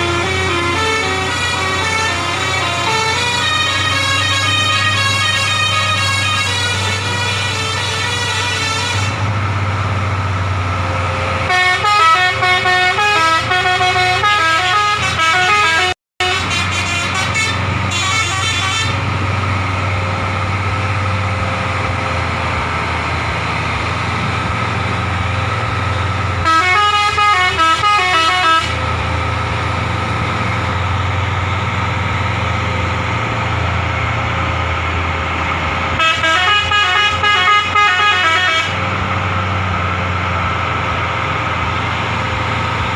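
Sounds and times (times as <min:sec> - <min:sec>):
bus horn playing melodic tunes: 0:00.0 - 0:09.3, 0:11.2 - 0:19.2, 0:26.3 - 0:29.2, 0:36.0 - 0:39.0
bus engine droning: 0:00.0 - 0:42.9.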